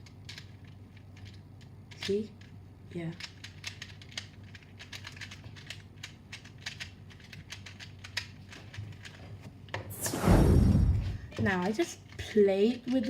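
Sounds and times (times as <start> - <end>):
puzzle cube clicking as turned: 3.2 - 9.2.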